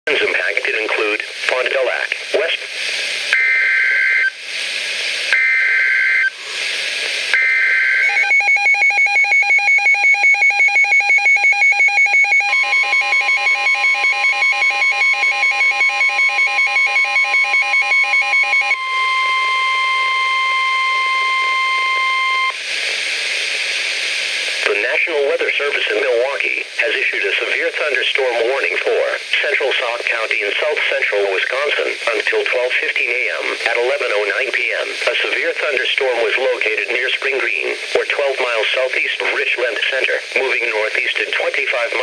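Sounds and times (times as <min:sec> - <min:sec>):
rapid pulsing alarm beeps: 0:03.4 - 0:04.4, 0:05.3 - 0:06.4, 0:07.3 - 0:22.6
steady warning tone: 0:05.3 - 0:06.4, 0:07.3 - 0:22.6.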